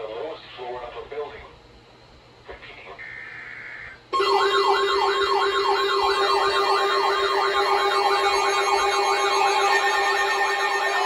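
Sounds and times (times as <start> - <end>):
warbling electronic siren alert: 4.2 - 11.0.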